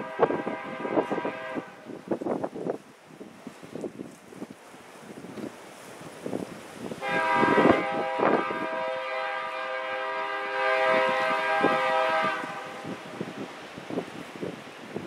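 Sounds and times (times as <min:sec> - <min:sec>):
locomotive air horn blast: 0:00.0 - 0:01.9, 0:07.0 - 0:13.2
wind buffeting microphone: 0:00.0 - 0:15.0.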